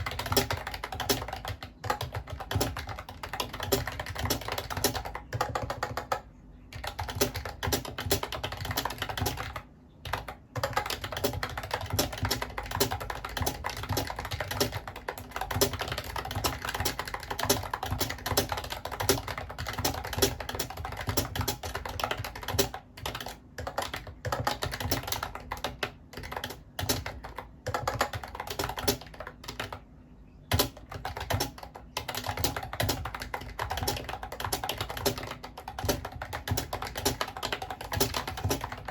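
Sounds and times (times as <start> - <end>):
fast typing on keyboard: 0.0 - 29.9, 30.5 - 38.9.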